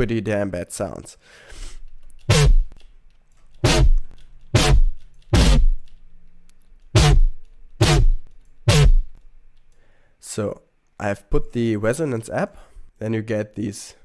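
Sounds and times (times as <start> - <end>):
distorted synth bass stabs: 2.3 - 2.7, 3.6 - 4.0, 4.6 - 5.8, 7.0 - 9.2.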